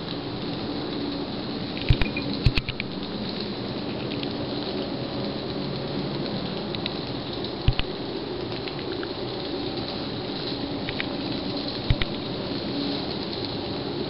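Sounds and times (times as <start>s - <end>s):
finger tapping microphone: 11.9s - 12.1s.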